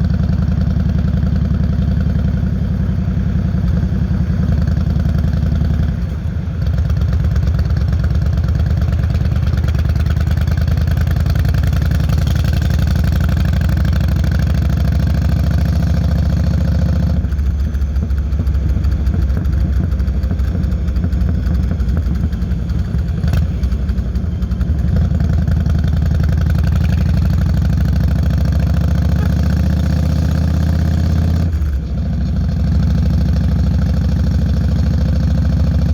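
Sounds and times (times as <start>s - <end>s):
motorcycle engine deep beat: 0.0s - 5.9s, 6.6s - 31.6s.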